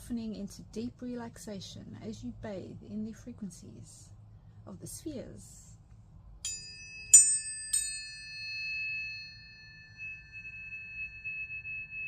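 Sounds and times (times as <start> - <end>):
high tuning fork tones ringing: 6.4 - 12.0
tuning fork strikes: 6.4 - 12.0.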